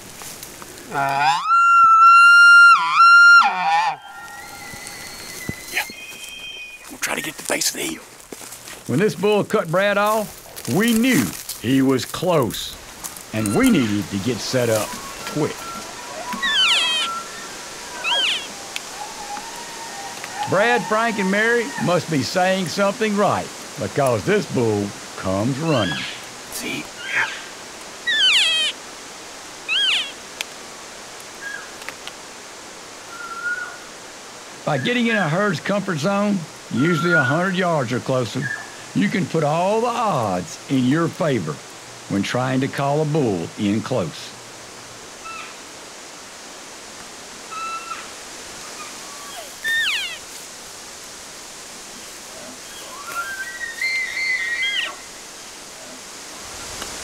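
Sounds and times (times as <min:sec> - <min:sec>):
background hiss: 0:00.0 - 0:57.0
elk mewing: 0:00.8 - 0:08.2, 0:08.8 - 0:22.4, 0:25.2 - 0:28.8, 0:48.7 - 0:50.3
high whistle dropping in pitch: 0:04.0 - 0:06.8.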